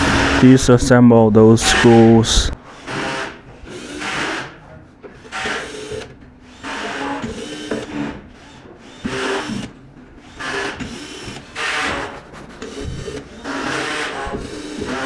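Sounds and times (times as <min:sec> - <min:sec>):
electric screwdriver whirring: 0:05.3 - 0:15.0.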